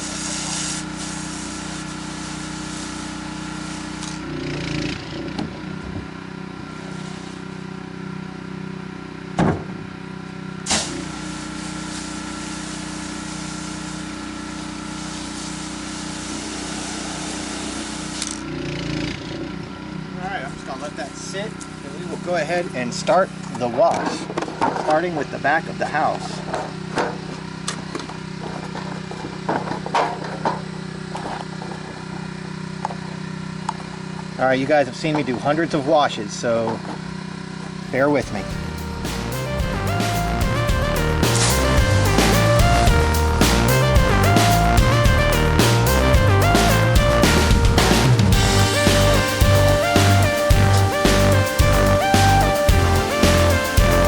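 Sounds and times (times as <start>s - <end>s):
water spray hiss: 0.0s - 4.2s, 6.8s - 7.5s, 10.7s - 18.3s
pressure washer engine running: 0.0s - 23.5s, 37.0s - 54.0s.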